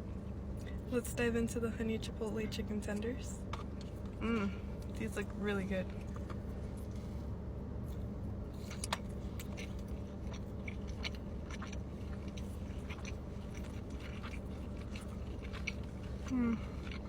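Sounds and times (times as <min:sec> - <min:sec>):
low steady hum: 0:00.0 - 0:17.0
person chewing crunchy food: 0:06.0 - 0:17.0.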